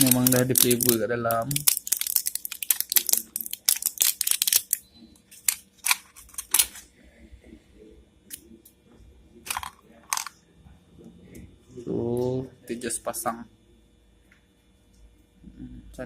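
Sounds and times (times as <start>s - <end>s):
plastic packaging crinkling: 0.0s - 6.9s, 9.5s - 10.3s.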